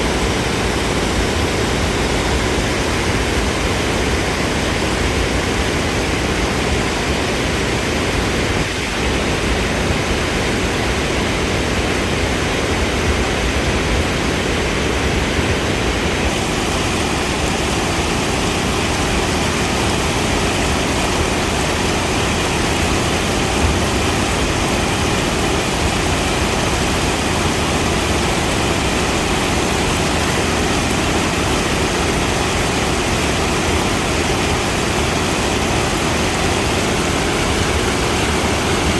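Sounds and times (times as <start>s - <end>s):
waterfall rushing: 16.0s - 38.9s.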